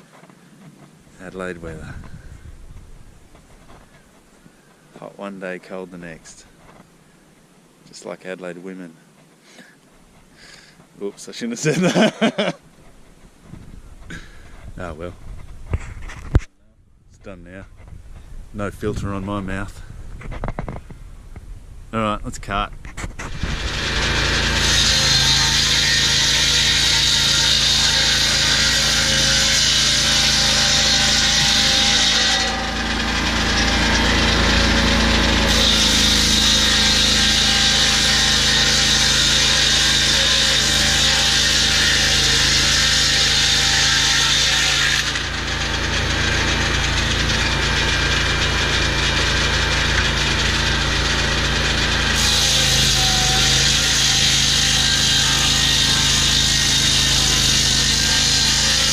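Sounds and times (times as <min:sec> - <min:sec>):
saw blade hissing through log: 0:51.8 - 0:58.9.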